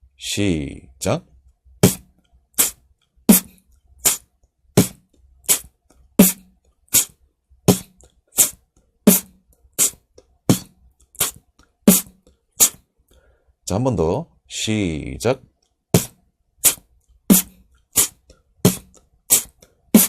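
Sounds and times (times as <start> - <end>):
beatboxed kick drum: 1.8 - 7.1, 7.7 - 12.8, 16.0 - 20.0
beatboxed breathy hi-hat: 1.8 - 13.3, 16.0 - 20.0.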